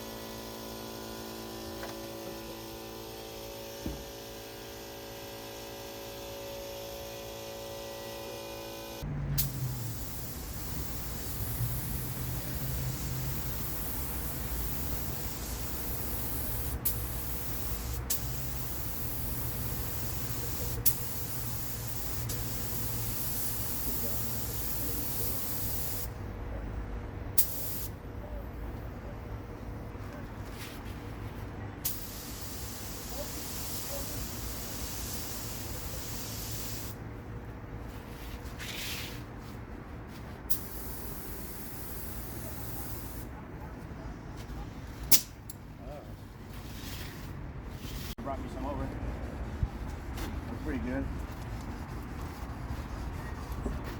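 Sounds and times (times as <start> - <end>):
spraying hiss: 9.4 - 26.1, 31.9 - 37.0
sharp click: 45.1 - 45.6.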